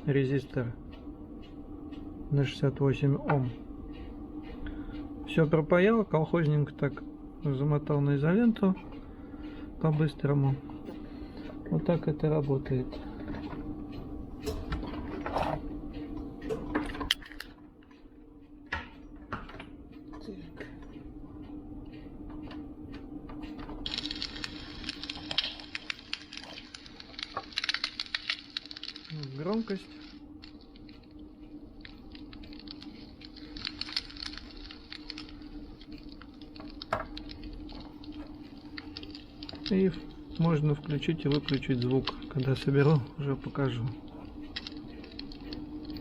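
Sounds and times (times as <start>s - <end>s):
faint steady hum: 0.0s - 46.0s
campfire crackling through small speaker: 23.7s - 46.0s.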